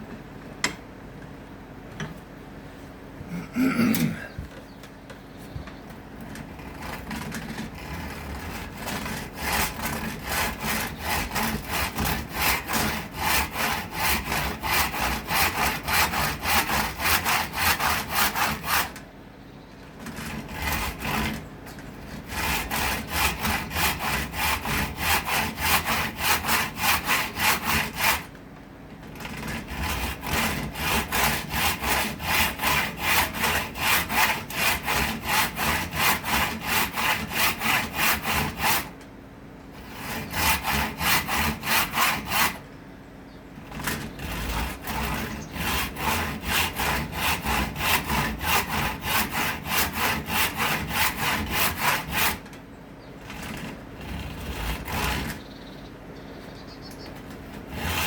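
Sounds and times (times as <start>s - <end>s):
hand saw cutting wood: 6.3s - 19.1s, 20.0s - 28.4s, 29.0s - 39.0s, 39.7s - 42.7s, 43.6s - 52.6s, 53.2s - 55.5s, 57.3s - 58.0s.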